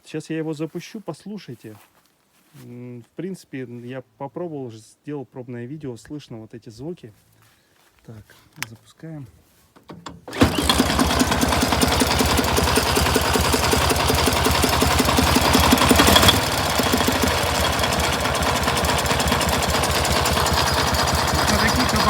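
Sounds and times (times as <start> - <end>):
motorcycle engine idling: 10.3 - 22.0.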